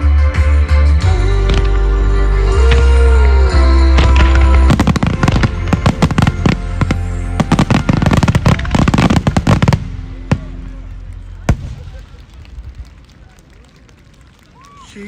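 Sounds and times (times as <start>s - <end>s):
music with heavy bass: 0.0s - 10.7s
fireworks bursting and crackling: 1.0s - 15.0s.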